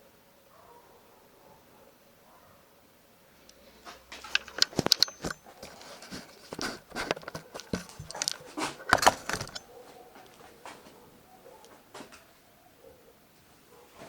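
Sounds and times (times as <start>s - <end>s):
metal objects clinking: 4.1s - 9.6s.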